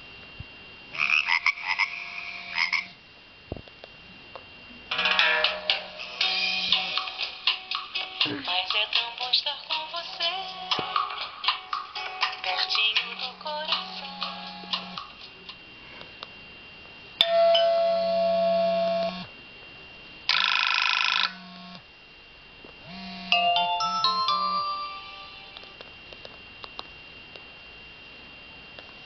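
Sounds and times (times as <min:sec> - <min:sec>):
phone ringtones and alert tones: 0:23.0 - 0:25.5.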